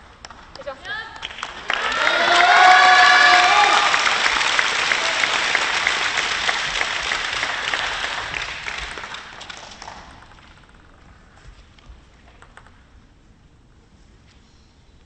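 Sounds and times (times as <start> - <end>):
audience applauding: 1.2 - 10.7.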